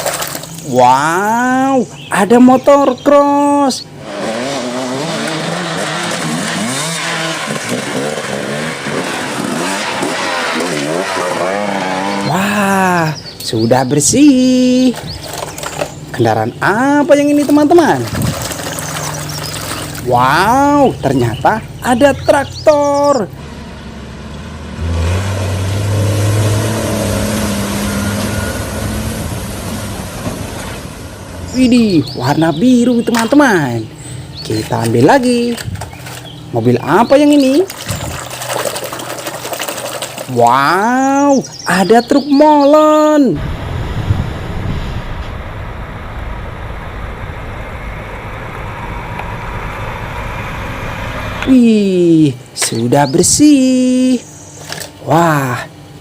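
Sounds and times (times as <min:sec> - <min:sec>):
dirt bike engine revving: 0:03.9 - 0:41.3.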